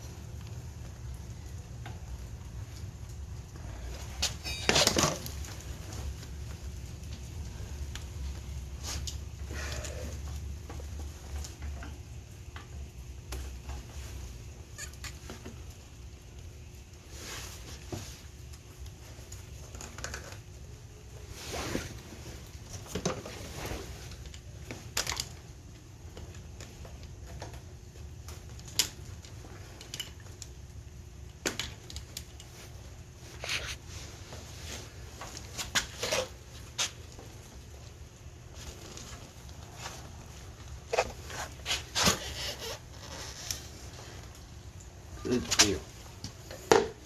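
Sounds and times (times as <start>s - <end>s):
low steady hum: 0.0s - 47.0s
hands and tools clicking and rustling: 22.6s - 30.6s.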